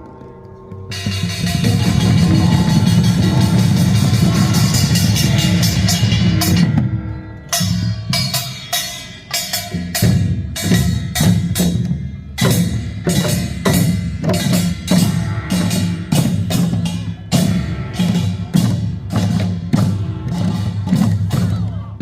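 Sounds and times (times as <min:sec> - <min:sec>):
wood-block-like strikes: 0:00.1 - 0:06.9
drums beaten in driving rhythm: 0:00.8 - 0:22.0.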